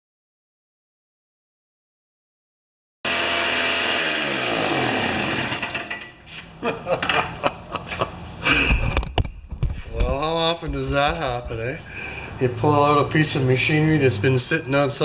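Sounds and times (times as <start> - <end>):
knocks and clatter: 8.7 - 11.7.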